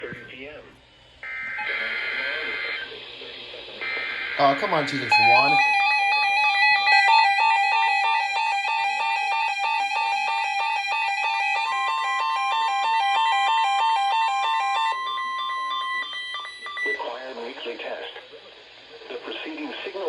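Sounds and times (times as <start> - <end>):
electronic warbling alert alarm: 3.8 - 17.0
steady high tone: 3.8 - 17.0
steady higher tone: 4.4 - 12.5.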